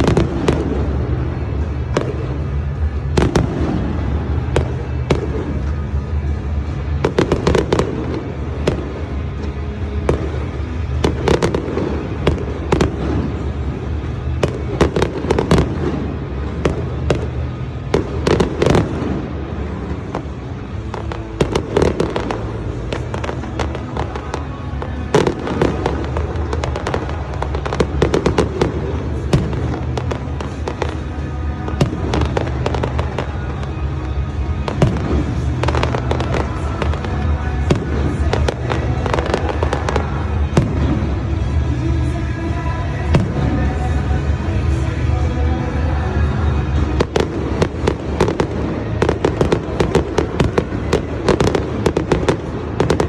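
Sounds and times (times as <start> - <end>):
fireworks bangs and crackles: 0.0 - 53.0
music with steady bass line: 0.0 - 53.0.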